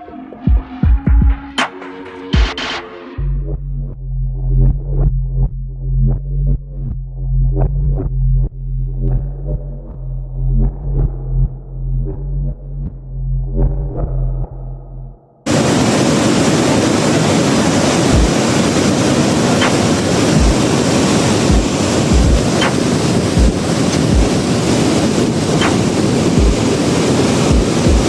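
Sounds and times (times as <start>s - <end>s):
waterfall roaring: 15.5s - 28.0s
wind buffeting microphone: 15.5s - 28.0s.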